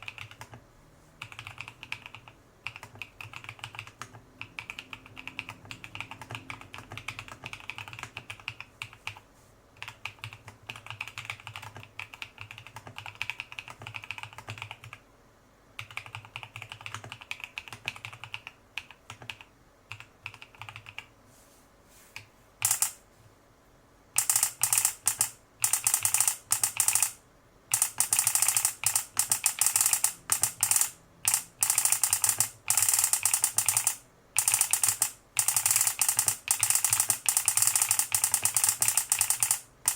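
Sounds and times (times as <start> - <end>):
mechanical keyboard typing: 0.0 - 0.6, 1.2 - 9.2, 9.8 - 15.0, 15.8 - 21.1, 22.2 - 23.0, 24.2 - 39.9
key-press buzzer tone: 24.2 - 39.9.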